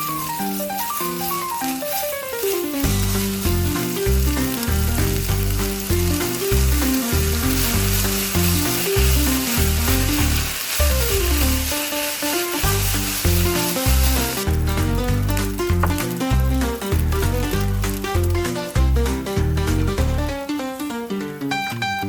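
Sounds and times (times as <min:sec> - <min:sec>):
frying hiss in pan: 0:00.0 - 0:22.0
background music with bass line: 0:02.8 - 0:11.7, 0:12.6 - 0:20.5.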